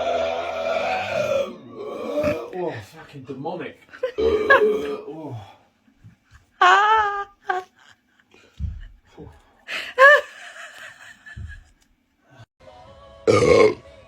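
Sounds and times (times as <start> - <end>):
men belching: 0.0 - 2.7, 4.0 - 5.5, 13.3 - 13.8.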